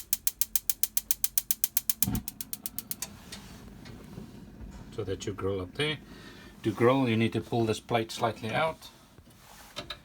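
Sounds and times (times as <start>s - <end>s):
spark igniter clicking rapidly: 0.0s - 3.1s.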